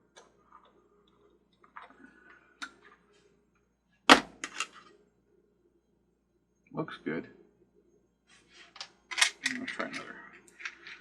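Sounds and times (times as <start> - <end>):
small parts clicking: 8.8 - 11.0.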